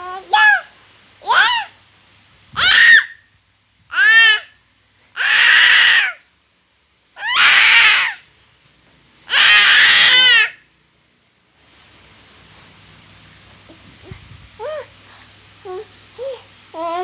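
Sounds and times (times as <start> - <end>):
baby squealing and screeching: 2.6 - 3.2, 3.9 - 4.5, 5.2 - 6.2, 7.2 - 8.3, 9.3 - 10.6.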